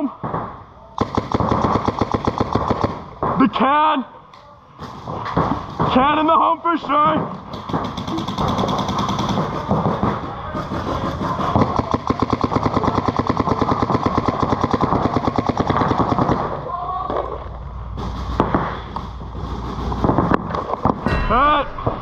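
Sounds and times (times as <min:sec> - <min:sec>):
paintball markers firing: 0:00.2 - 0:03.4, 0:07.1 - 0:16.6.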